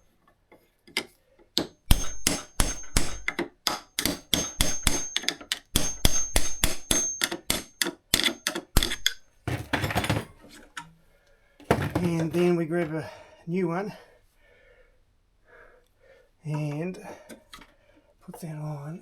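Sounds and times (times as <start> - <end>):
hammer tapping on metal tool: 1.6 - 9.2.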